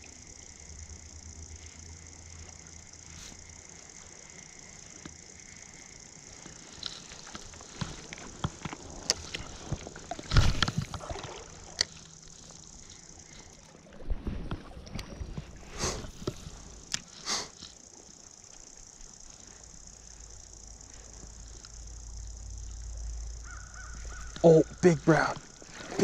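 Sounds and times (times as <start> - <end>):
river flowing: 3.8 - 14.1
water sloshing and splashing: 5.7 - 17.1, 24.0 - 26.0.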